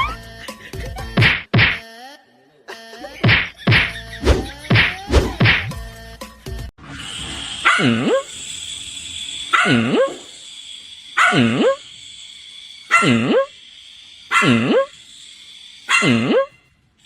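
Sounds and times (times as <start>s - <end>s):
steady high hiss: 7.1s - 16.0s
dog barking: 7.6s - 8.2s, 9.5s - 10.2s, 11.2s - 11.8s, 12.9s - 13.5s, 14.3s - 14.9s, 15.9s - 16.5s.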